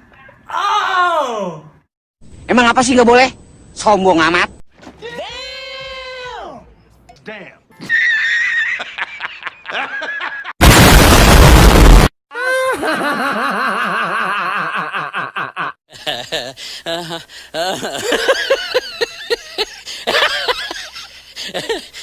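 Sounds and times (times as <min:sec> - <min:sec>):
laughter: 0:07.8 - 0:10.6, 0:12.7 - 0:22.0
loud distorted blast: 0:10.6 - 0:12.1.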